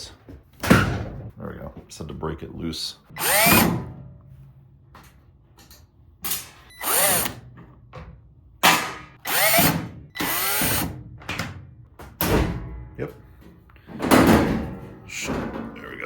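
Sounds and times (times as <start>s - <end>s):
power drill whine: 3.2s - 3.6s, 6.7s - 7.4s, 9.2s - 10.9s.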